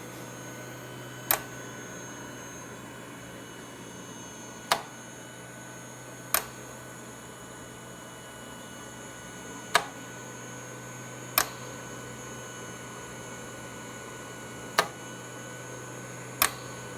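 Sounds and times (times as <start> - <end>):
ventilator clicks: 1.2 - 1.6, 4.6 - 5.0, 6.3 - 6.6, 9.7 - 10.0, 11.4 - 11.6, 14.8 - 15.0, 16.4 - 16.8.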